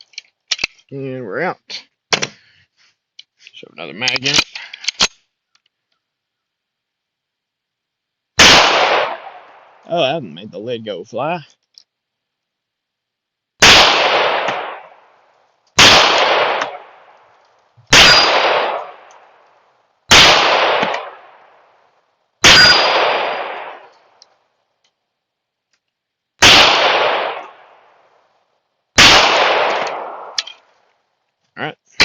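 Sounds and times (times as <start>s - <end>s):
pistol shots echoing: 8.4s - 9.8s, 13.6s - 15.1s, 15.8s - 17.2s, 17.9s - 19.3s, 20.1s - 21.5s, 22.4s - 23.9s, 26.4s - 27.9s, 29.0s - 30.5s.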